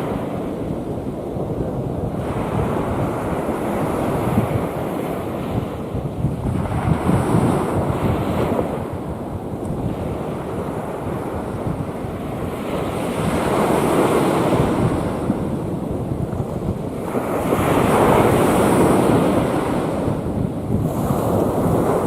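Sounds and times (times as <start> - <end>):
sea waves breaking: 0.0 - 22.0
wind buffeting microphone: 0.0 - 22.0.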